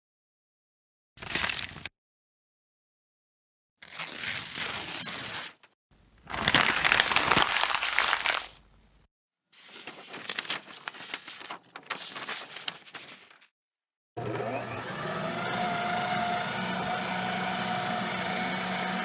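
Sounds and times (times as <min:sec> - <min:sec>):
crackly crinkling noise: 0:06.0 - 0:09.1, 0:09.7 - 0:13.5.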